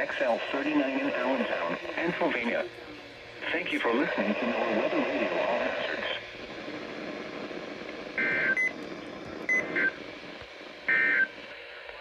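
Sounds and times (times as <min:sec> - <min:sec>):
radio hiss: 0:00.0 - 0:08.2, 0:11.4 - 0:12.0.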